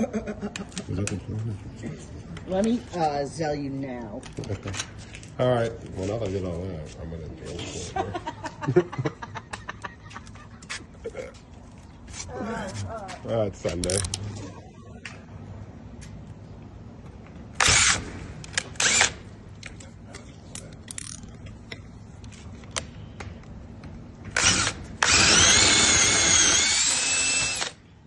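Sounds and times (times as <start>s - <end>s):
power drill whining: 18.8s - 19.1s, 24.3s - 27.8s.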